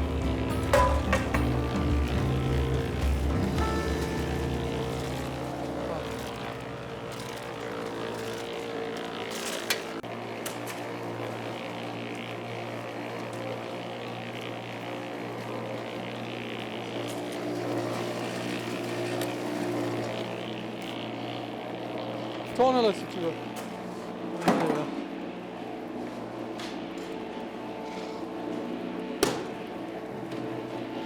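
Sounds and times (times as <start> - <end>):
engine running steadily: 0.0 - 31.0.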